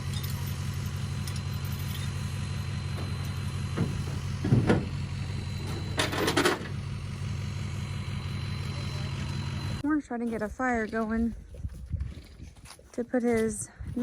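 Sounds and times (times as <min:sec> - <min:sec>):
rattling clatter: 0:00.0 - 0:07.1
engine idling: 0:00.0 - 0:10.6.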